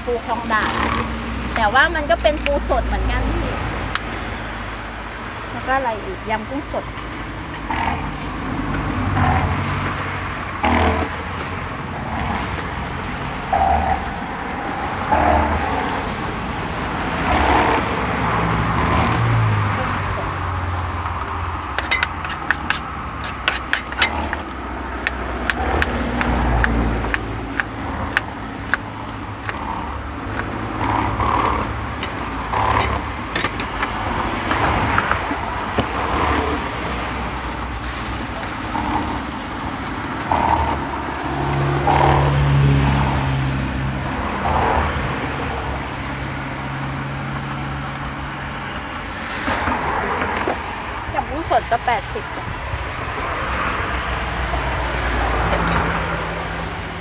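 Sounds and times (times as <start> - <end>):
car engine hum: 0.0 - 57.0
road traffic: 0.0 - 57.0.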